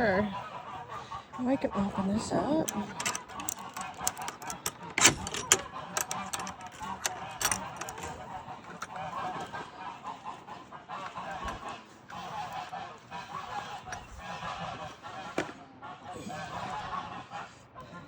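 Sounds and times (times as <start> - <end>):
geese honking: 0.0 - 18.0
handling clicks and knocks: 2.6 - 9.6.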